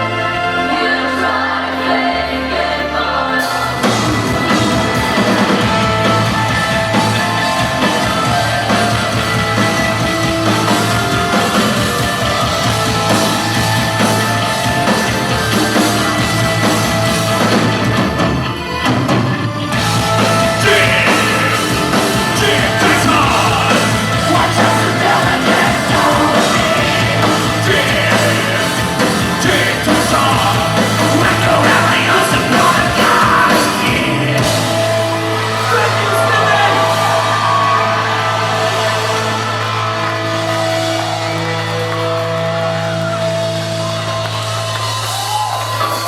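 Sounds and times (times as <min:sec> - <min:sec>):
drums: 0:00.0 - 0:46.0
live heavy metal band: 0:00.0 - 0:46.0
shouted vocals: 0:19.8 - 0:41.8.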